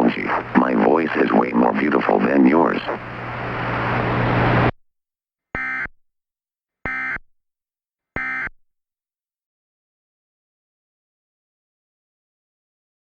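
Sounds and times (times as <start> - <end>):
hiss over a steady hum: 0.0 - 4.7.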